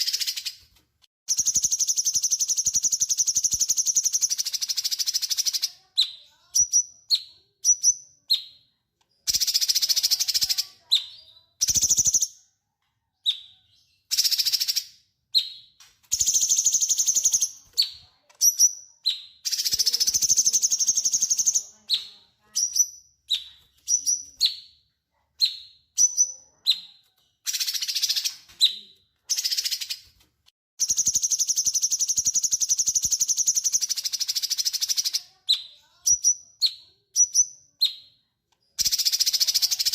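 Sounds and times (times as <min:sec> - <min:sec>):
bird harsh chattering: 0:19.4 - 0:22.8.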